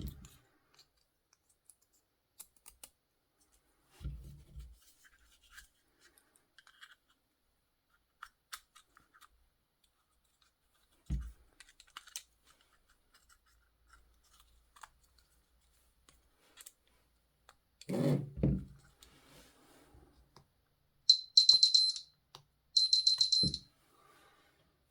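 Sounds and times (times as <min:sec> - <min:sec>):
plastic clicks and scratches: 0:00.0 - 0:03.0, 0:05.0 - 0:07.2, 0:07.9 - 0:17.9.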